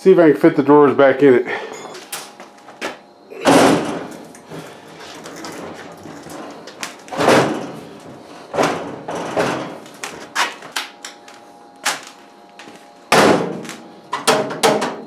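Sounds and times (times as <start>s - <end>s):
metal ringing: 1.8s - 2.4s
sharp metal knocks: 2.1s - 2.4s.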